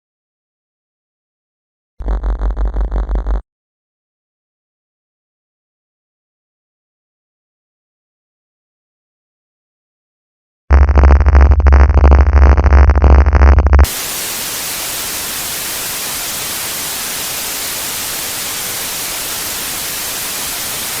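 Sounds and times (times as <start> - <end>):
harsh pulsing blare: 10.7 - 21.0
white-noise static: 12.0 - 21.0.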